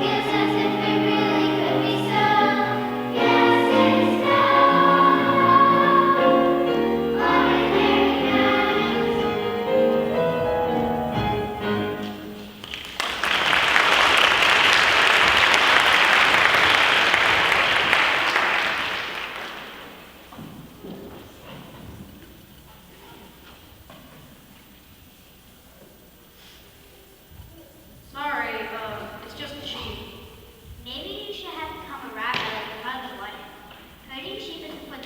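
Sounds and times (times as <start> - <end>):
choir singing: 0.0 - 12.6
audience applause: 12.4 - 20.3.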